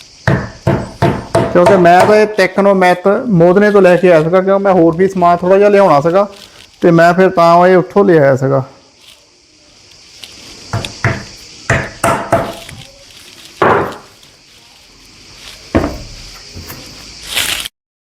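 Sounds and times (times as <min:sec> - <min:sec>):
steady high hiss: 0:00.0 - 0:17.7
chair knocks and thumps: 0:15.7 - 0:16.9.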